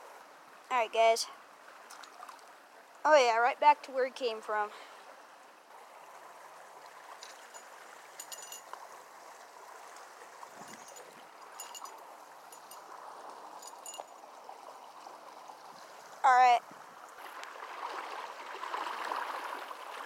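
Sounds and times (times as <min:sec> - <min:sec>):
creek water running: 0:00.0 - 0:20.0
light clicks and clinks: 0:07.2 - 0:08.8, 0:10.6 - 0:12.9, 0:13.6 - 0:14.3.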